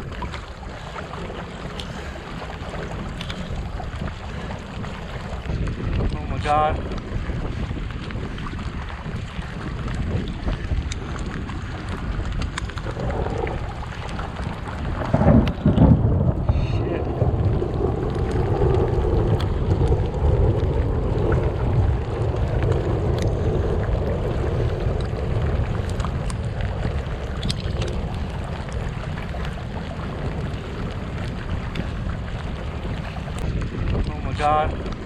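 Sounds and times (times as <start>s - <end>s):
water splashing along hull: 0.0s - 35.0s
wind buffeting microphone: 0.0s - 35.0s
small ticks: 12.3s - 13.5s, 27.2s - 28.8s.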